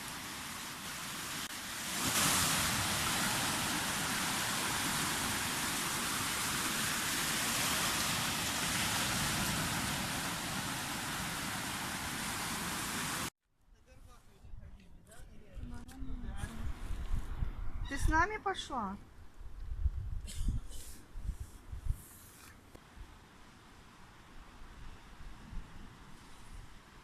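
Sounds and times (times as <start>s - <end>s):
sea surf washing on shore: 0.0s - 13.3s.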